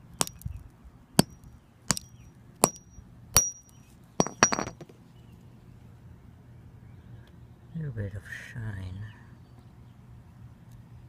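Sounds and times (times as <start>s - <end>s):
hammer striking rock: 0.2s - 0.4s, 1.2s - 4.8s.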